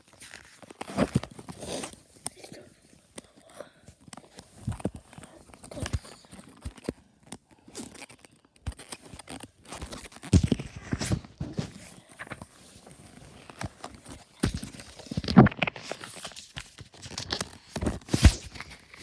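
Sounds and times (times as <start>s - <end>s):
book pages turning: 0.0s - 2.4s, 7.8s - 19.0s
knocks and rustles: 9.7s - 16.1s.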